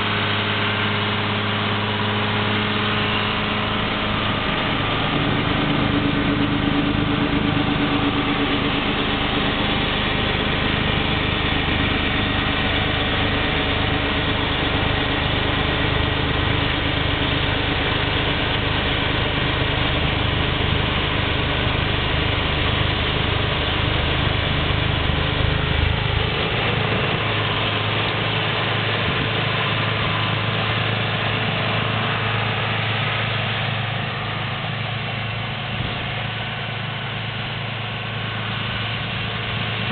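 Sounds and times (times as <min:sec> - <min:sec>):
tractor diesel engine running: 0:00.0 - 0:39.9
deep low rumble: 0:03.0 - 0:30.3.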